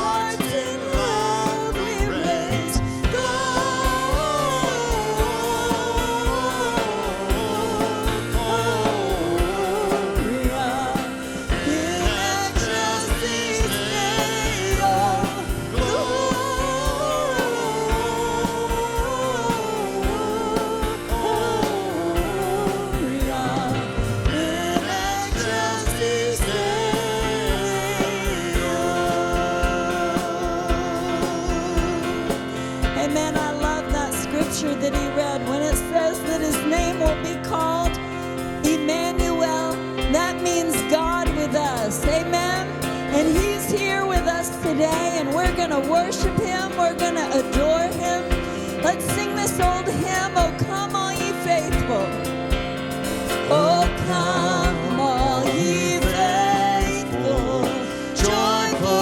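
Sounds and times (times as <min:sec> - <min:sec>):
person singing: 0:00.0 - 0:59.0
steady drum beat: 0:00.0 - 0:59.0.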